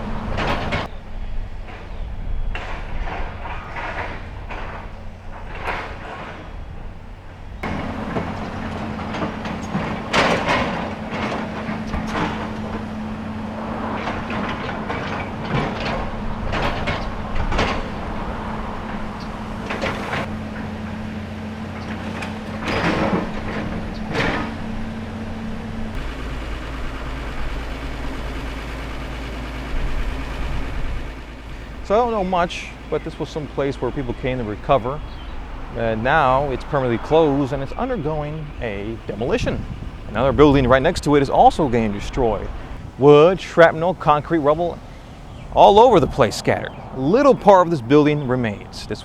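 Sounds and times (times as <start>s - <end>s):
machinery engine hum: 0.0s - 49.0s
debris crashing and scraping: 2.5s - 44.7s.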